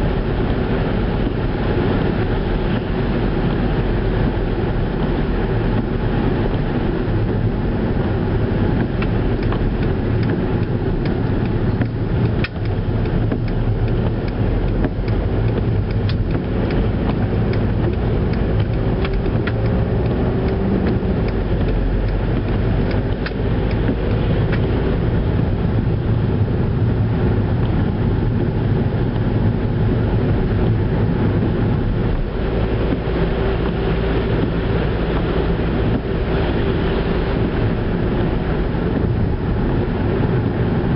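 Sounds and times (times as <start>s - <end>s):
car engine and road noise: 0.0s - 40.9s
light ticks and clicks: 8.8s - 24.7s.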